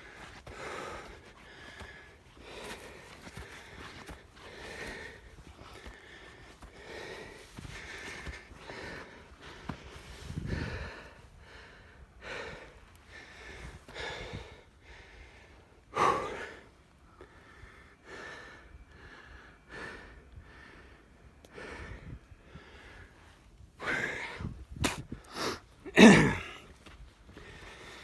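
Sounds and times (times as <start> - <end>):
person breathing heavily: 0.0 - 28.0.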